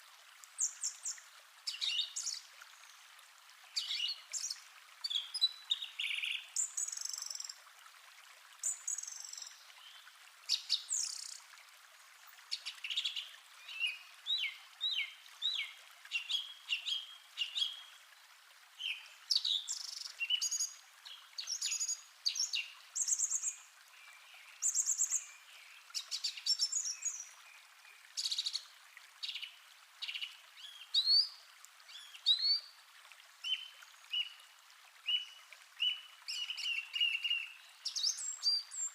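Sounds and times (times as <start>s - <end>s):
stream water hiss: 0.0s - 38.9s
songbirds chirping: 0.5s - 7.7s.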